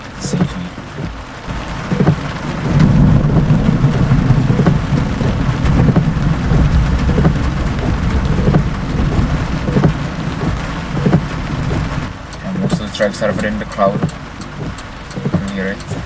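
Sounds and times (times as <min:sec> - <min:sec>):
heavy rain pattering: 0:00.0 - 0:16.0
rolling thunder rumble: 0:01.4 - 0:13.6.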